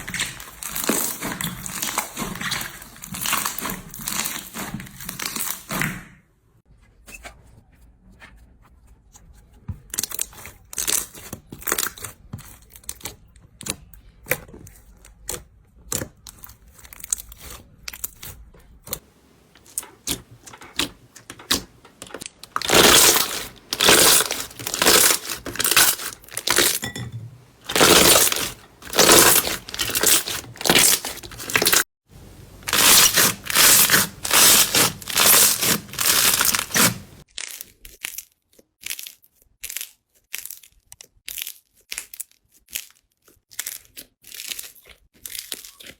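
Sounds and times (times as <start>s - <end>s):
slime squeezed by hand: 22.6s - 26.8s, 27.7s - 31.8s, 32.6s - 38.2s.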